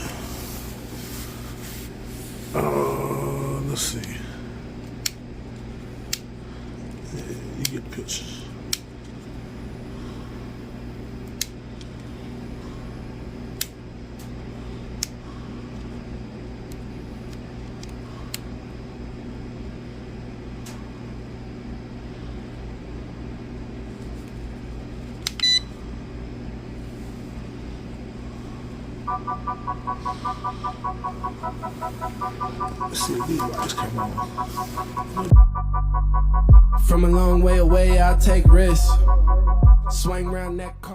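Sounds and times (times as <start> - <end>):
low electrical hum: 0.0 - 40.9
repeated multi-pitch electronic beeps: 29.1 - 35.4.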